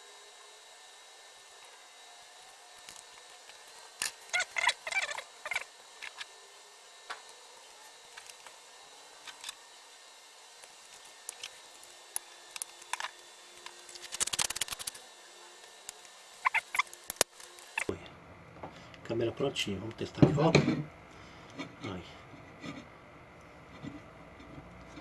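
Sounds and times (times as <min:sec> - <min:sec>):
small parts clicking and tapping: 0:10.6 - 0:15.0, 0:15.8 - 0:17.9.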